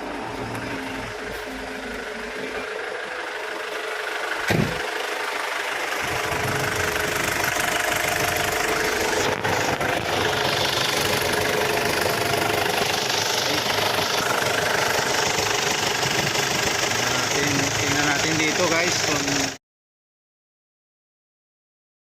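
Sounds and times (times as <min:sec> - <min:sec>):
diesel engine idling: 0:00.0 - 0:19.6
sharp knock: 0:04.5 - 0:04.8.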